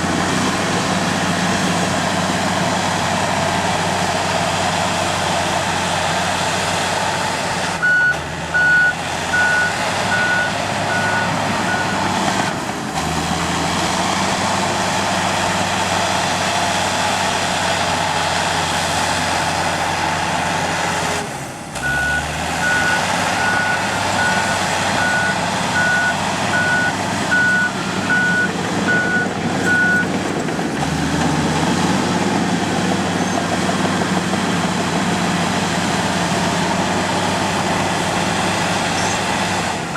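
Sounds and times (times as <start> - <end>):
bulldozer diesel engine running: 0.0 - 39.9
reversing alarm beeps: 7.8 - 12.0, 21.8 - 30.1.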